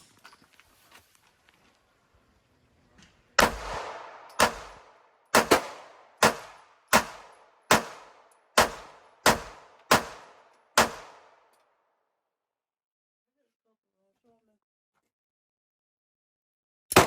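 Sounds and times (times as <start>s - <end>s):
pistol shots: 3.4s - 11.5s.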